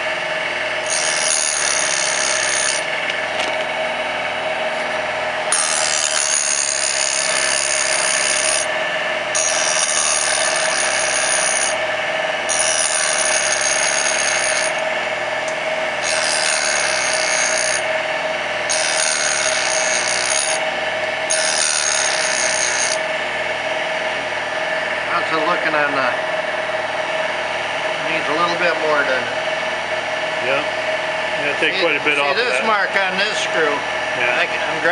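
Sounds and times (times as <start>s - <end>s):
grinder grinding metal: 0.8s - 3.6s, 4.8s - 18.0s, 18.6s - 23.2s.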